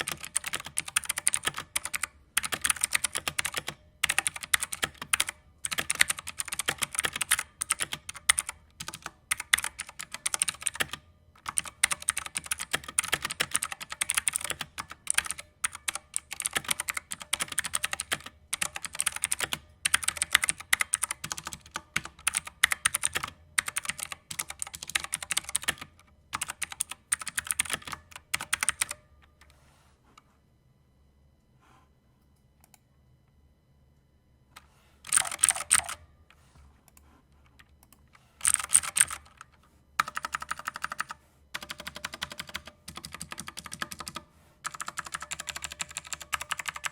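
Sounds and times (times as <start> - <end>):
mechanical keyboard key clacks: 38.4 - 39.4.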